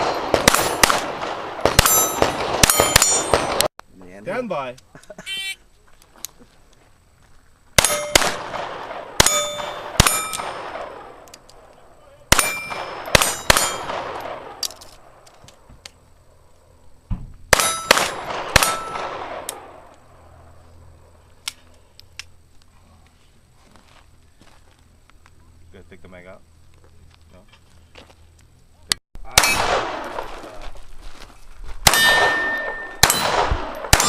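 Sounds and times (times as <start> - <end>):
pistol shots: 0.0 - 3.7, 7.8 - 11.2, 12.3 - 14.8, 17.5 - 19.8, 29.3 - 30.6, 31.8 - 34.0
steel target clanging: 1.8 - 3.6, 9.2 - 10.7, 12.3 - 14.3, 31.9 - 34.0.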